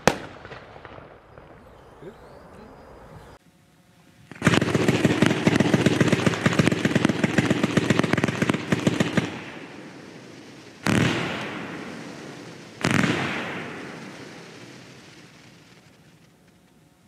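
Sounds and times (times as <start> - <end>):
loud firework bang: 0.0 - 1.7, 10.8 - 15.3
firework cracks: 0.0 - 1.8, 4.2 - 16.8.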